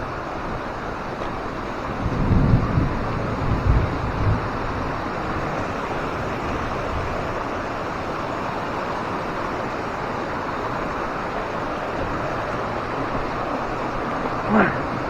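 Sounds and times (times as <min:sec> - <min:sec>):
wind buffeting microphone: 0:00.0 - 0:15.0
waterfall rushing: 0:04.5 - 0:15.0.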